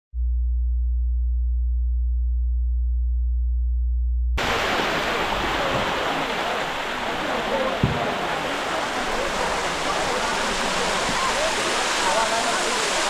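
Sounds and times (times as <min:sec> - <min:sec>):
deep electronic hum: 0:00.1 - 0:04.4
waterfall rushing: 0:04.4 - 0:13.0.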